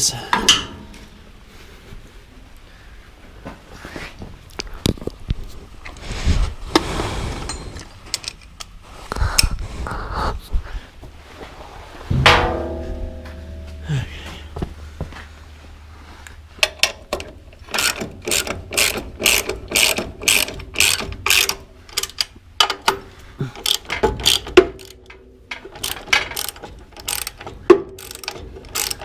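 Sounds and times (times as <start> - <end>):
ratchet wrench clicking: 16.6 - 23.0, 23.6 - 29.0.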